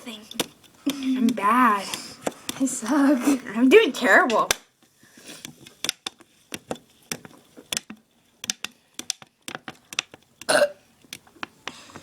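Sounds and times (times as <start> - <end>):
person burping: 10.5 - 10.8.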